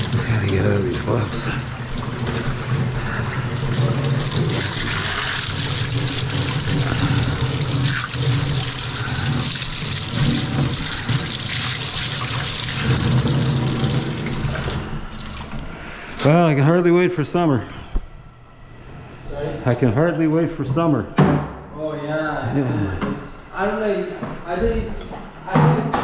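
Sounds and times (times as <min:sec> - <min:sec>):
tap water running into sink: 0:00.0 - 0:15.7.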